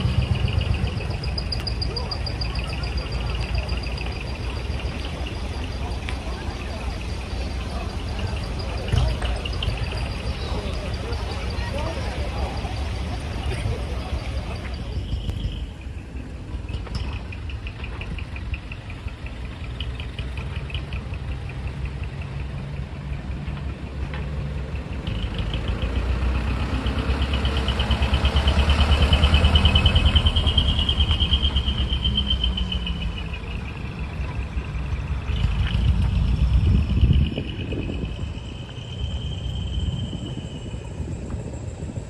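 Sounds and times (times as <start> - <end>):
large truck engine rumbling: 0.0 - 42.0.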